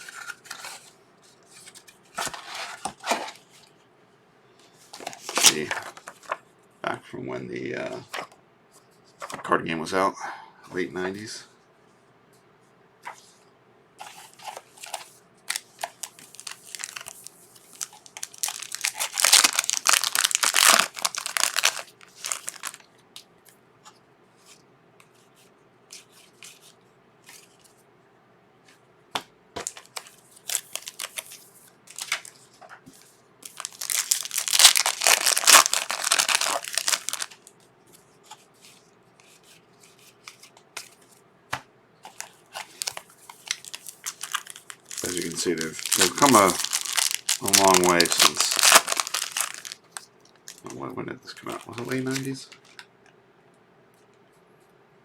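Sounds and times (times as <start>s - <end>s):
wrappers crinkling: 14.0s - 22.9s, 29.6s - 32.5s, 33.4s - 37.6s, 42.1s - 52.8s.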